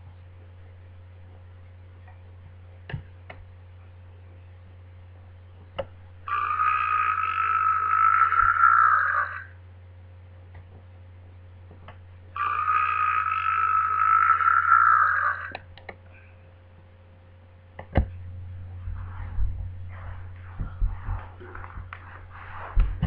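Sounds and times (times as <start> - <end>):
croaky burp: 6.3 - 9.5, 12.4 - 15.5.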